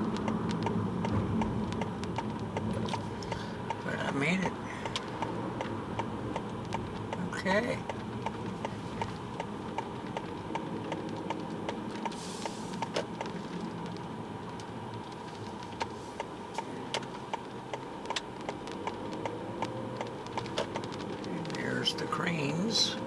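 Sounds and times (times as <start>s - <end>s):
car idling hum: 0.0s - 23.0s
turn signal ticking: 0.0s - 23.0s.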